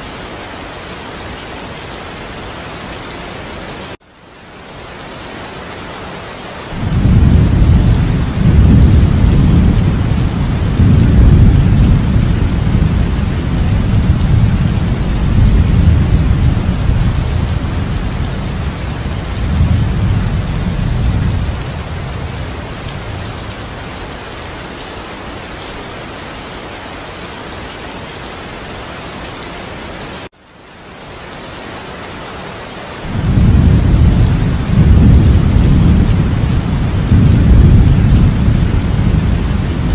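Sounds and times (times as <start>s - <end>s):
heavy rain pouring: 0.0s - 39.9s
rolling thunder rumble: 6.8s - 24.0s, 33.1s - 39.9s.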